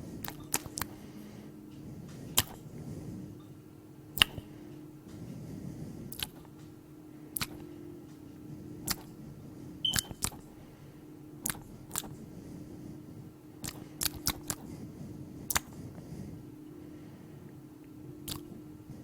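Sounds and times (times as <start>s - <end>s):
low steady hum: 0.0s - 19.0s
gum-chewing smacks: 2.4s - 2.6s, 4.2s - 4.4s, 6.1s - 6.4s, 7.4s - 7.6s, 8.9s - 9.1s, 10.0s - 10.4s, 11.4s - 12.2s, 13.6s - 14.7s, 15.5s - 15.7s, 18.2s - 18.6s.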